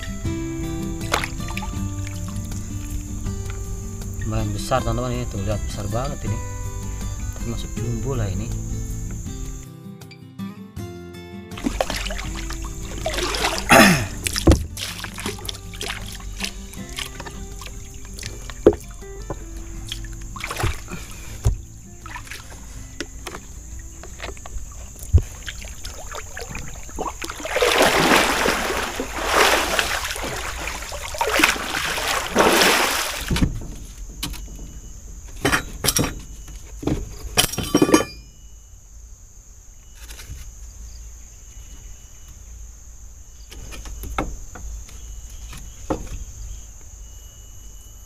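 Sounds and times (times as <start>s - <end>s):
river water splashing: 0.0s - 4.2s, 11.6s - 34.0s
high-pitched insect drone: 0.0s - 9.7s, 11.6s - 48.0s.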